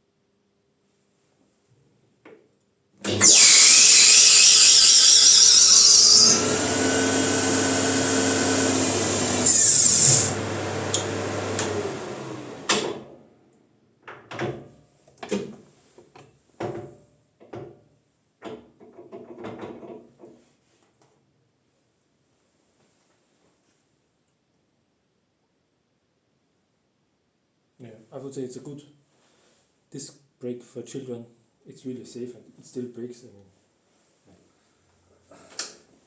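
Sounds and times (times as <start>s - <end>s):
lathe motor running: 3.1s - 12.7s
knocks and clatter: 18.4s - 20.3s.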